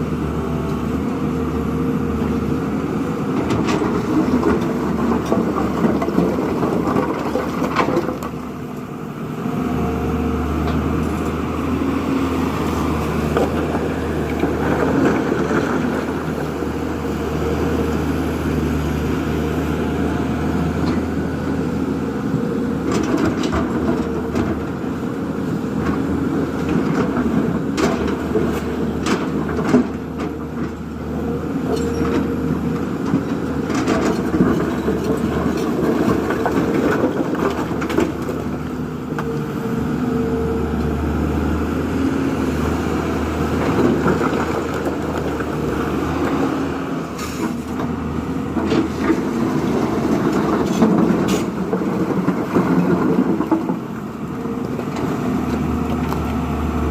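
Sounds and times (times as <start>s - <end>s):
diesel engine running: 0.0s - 56.9s.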